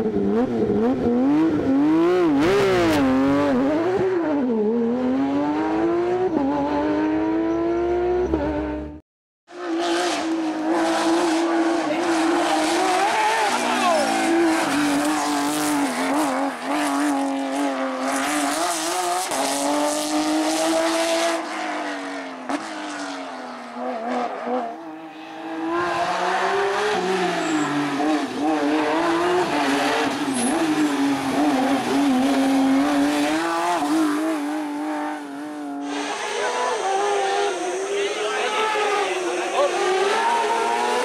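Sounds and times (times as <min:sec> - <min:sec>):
race car engine revving: 0:00.0 - 0:41.0
tyre squeal: 0:27.0 - 0:28.0.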